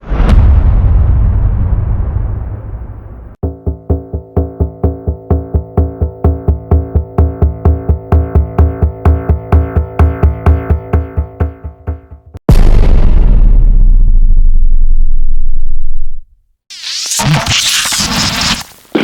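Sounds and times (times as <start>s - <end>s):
sudden loud blast: 0.0s - 3.4s, 12.4s - 15.7s
synth chord with drum-machine beat: 3.4s - 12.4s.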